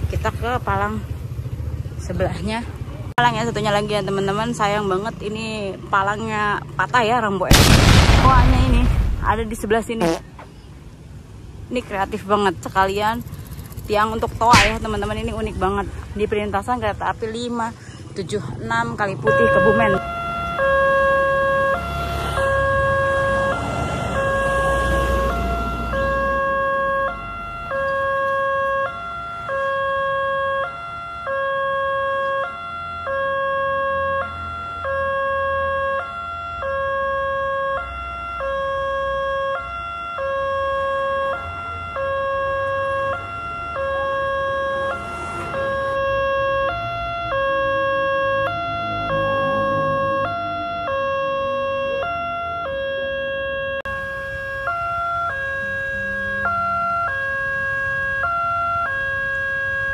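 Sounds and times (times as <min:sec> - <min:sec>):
two-tone crossing siren wail: 0:19.0 - 0:59.9.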